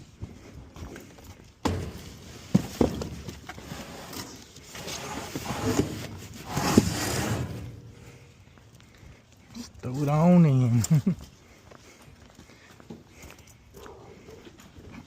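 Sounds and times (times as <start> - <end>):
junk scraping and rustling: 1.5 - 8.5.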